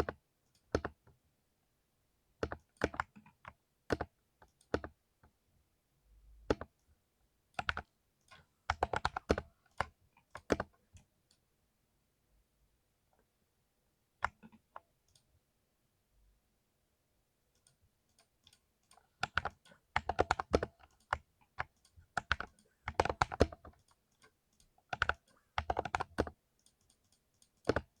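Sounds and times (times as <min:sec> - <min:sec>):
mechanical keyboard typing: 0:00.0 - 0:01.0, 0:02.4 - 0:05.0, 0:06.5 - 0:06.8, 0:07.6 - 0:07.9, 0:08.7 - 0:10.8, 0:19.2 - 0:28.0.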